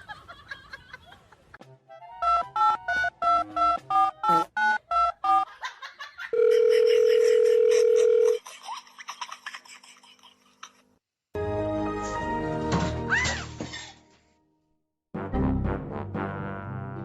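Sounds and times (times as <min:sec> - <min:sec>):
steady phone tone: 0:06.3 - 0:08.4.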